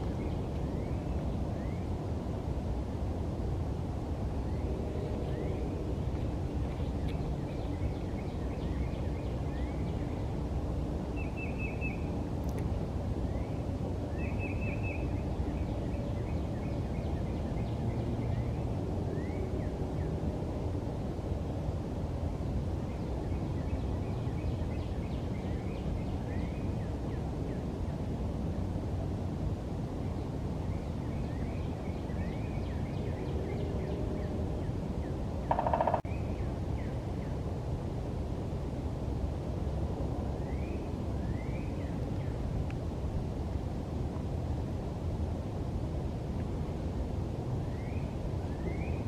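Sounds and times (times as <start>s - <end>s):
low outdoor rumble: 0.0s - 11.3s
woodpecker calling: 35.5s - 36.1s.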